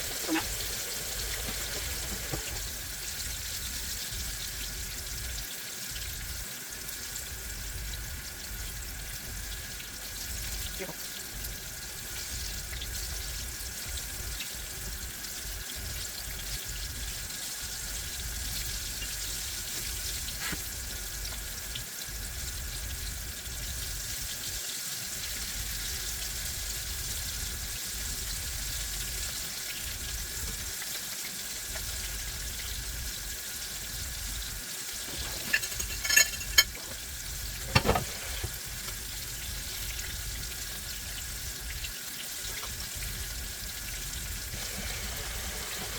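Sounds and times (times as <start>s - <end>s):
food sizzling in hot grease: 0.0s - 45.9s.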